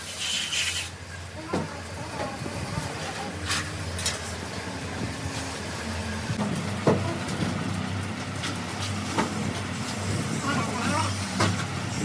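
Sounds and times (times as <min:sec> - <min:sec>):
engine humming: 0:00.0 - 0:12.0.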